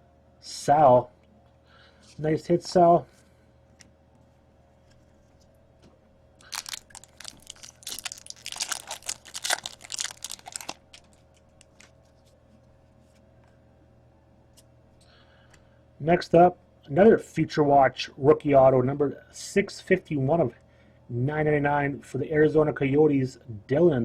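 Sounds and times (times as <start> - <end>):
wrapper crinkling and tearing: 6.4 - 12.2.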